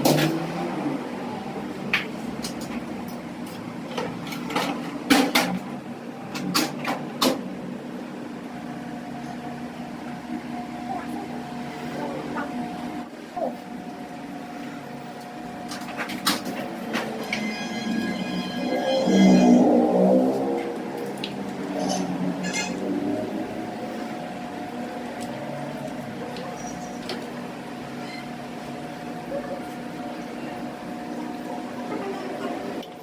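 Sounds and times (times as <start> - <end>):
faint voices: 10.7 - 14.0.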